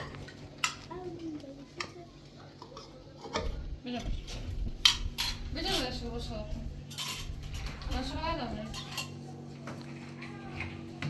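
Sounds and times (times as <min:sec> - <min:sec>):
faint voices: 0:05.5 - 0:11.0.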